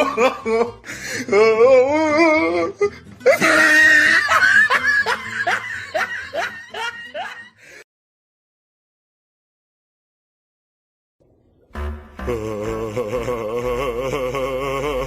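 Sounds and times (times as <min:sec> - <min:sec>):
rhythmic comedy laughing: 0:00.0 - 0:02.2, 0:02.8 - 0:07.8, 0:11.8 - 0:15.0
warbling wavering voice: 0:11.4 - 0:15.0.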